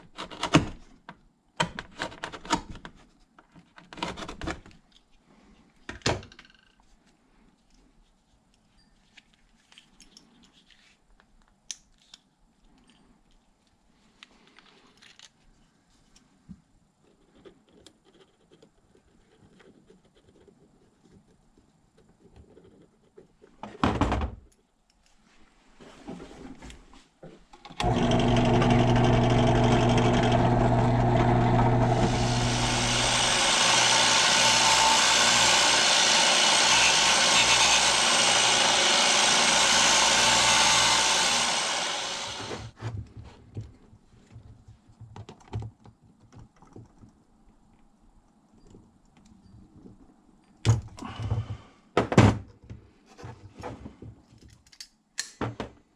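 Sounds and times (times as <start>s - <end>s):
small electric power tool running: 27.8s - 42.7s.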